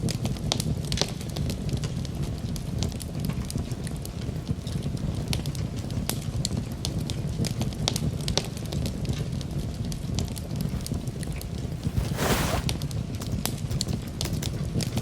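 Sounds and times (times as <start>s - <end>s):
low rumble of flames: 0.0s - 13.6s.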